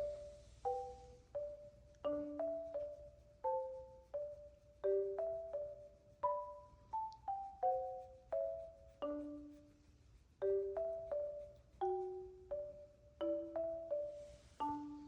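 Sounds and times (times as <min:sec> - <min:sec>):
mallet percussion melody: 0:00.0 - 0:09.8, 0:10.4 - 0:15.0.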